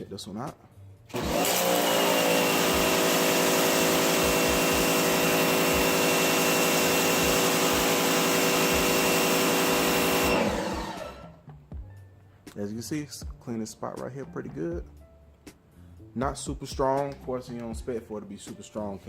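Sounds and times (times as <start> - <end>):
pressure washer motor humming: 1.1 - 11.4
water spraying hiss: 3.9 - 6.6.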